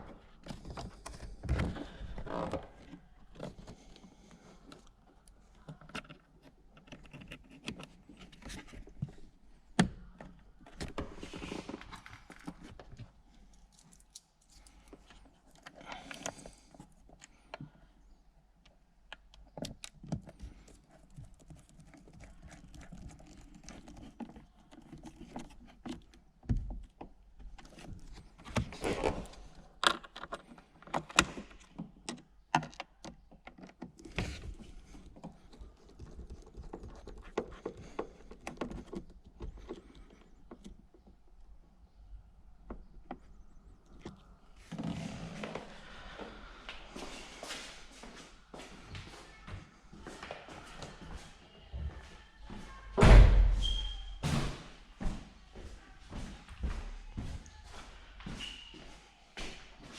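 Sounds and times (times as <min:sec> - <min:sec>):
rustling: 0:20.1 - 0:29.6
loud thumps: 0:54.2 - 0:54.7.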